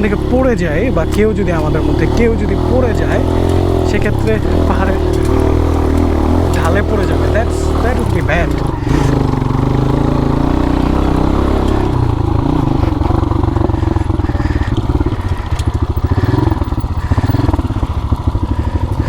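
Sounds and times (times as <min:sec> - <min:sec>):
dirt bike engine throbbing: 0:00.0 - 0:19.0.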